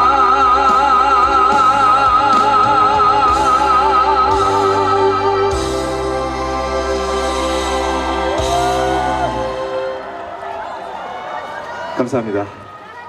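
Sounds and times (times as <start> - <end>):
man singing with vibrato: 0.0 - 10.0
band playing: 0.0 - 12.7.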